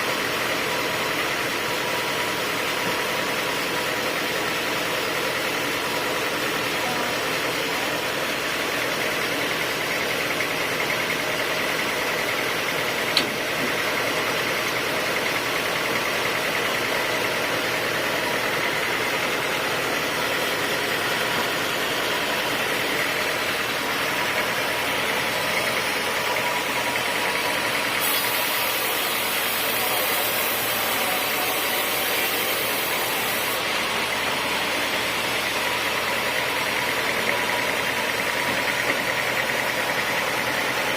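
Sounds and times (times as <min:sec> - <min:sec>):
sawmill saw machinery whining: 0:00.0 - 0:40.9
sharp click: 0:13.1 - 0:13.4.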